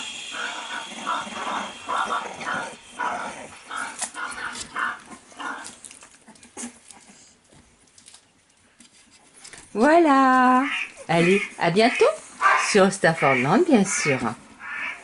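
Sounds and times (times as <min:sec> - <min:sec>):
puppies crying: 0:00.0 - 0:07.3.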